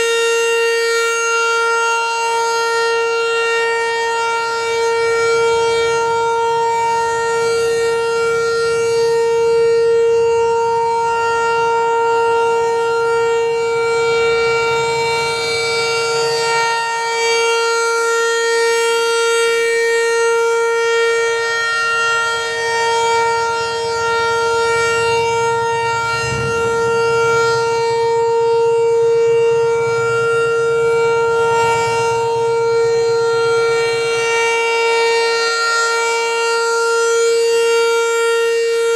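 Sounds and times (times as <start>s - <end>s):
warning siren steady tone: 0.0s - 38.9s.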